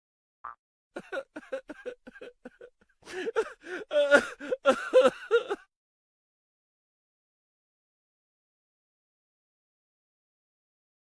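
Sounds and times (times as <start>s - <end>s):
high-pitched laughing: 1.0s - 5.6s.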